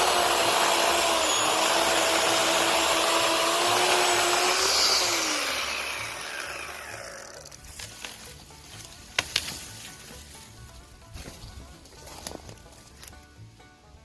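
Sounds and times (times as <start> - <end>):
chainsaw motor winding down: 0.0 - 7.7
electric chainsaw whining: 0.0 - 7.8.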